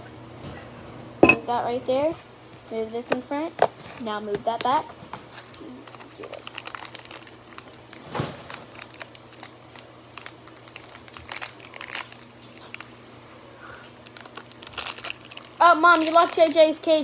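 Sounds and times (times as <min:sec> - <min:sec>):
slime crinkly clicks: 0:08.8 - 0:12.9.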